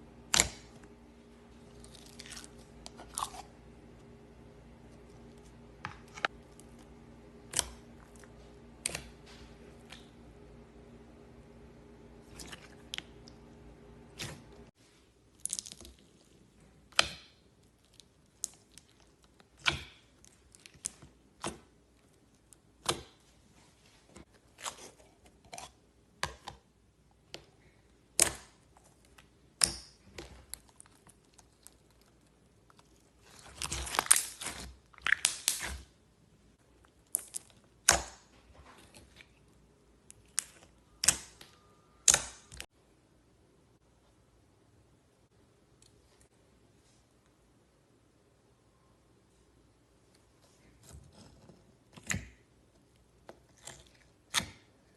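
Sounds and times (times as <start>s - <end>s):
slime squished by hand: 28.1s - 35.9s
slime popping and clicking: 40.3s - 42.6s.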